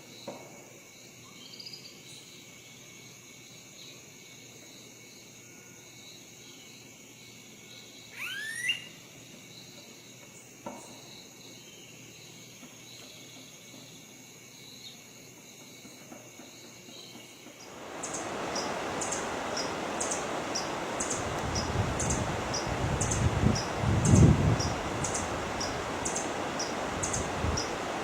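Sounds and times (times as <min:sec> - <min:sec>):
insects trilling: 0:17.6 - 0:28.0.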